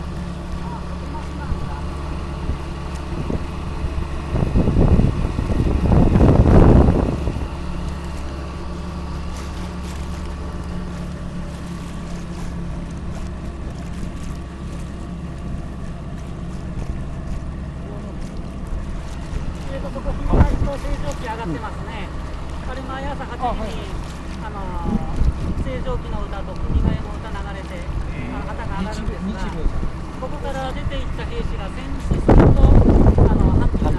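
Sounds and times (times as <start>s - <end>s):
small boat engine running: 0.0s - 33.9s.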